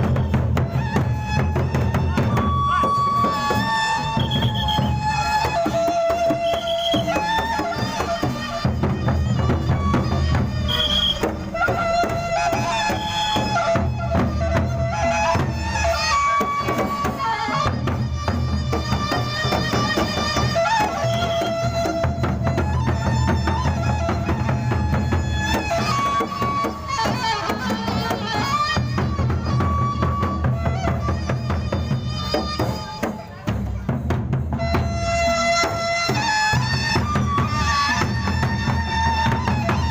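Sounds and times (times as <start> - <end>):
big drums: 0.0 - 39.9.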